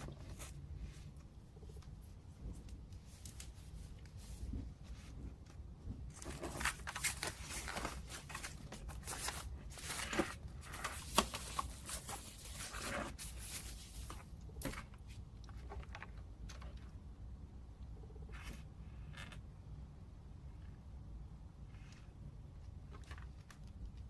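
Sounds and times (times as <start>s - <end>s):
packaging rustling and crinkling: 2.6s - 14.8s.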